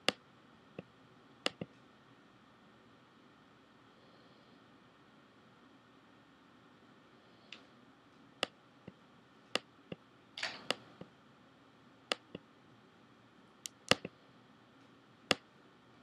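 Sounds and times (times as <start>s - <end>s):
computer mouse clicking: 1.4s - 1.7s, 13.6s - 14.1s.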